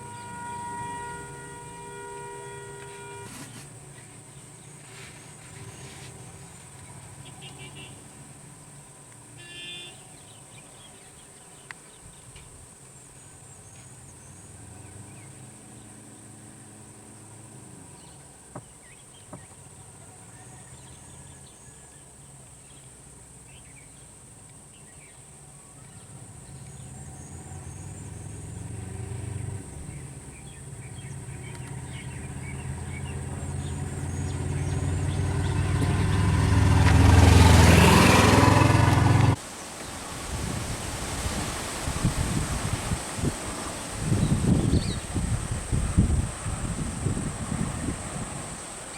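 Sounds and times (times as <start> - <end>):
vehicle engine running: 0.0 - 9.2, 25.8 - 39.4
faint clicks: 11.6 - 12.5, 31.4 - 31.8.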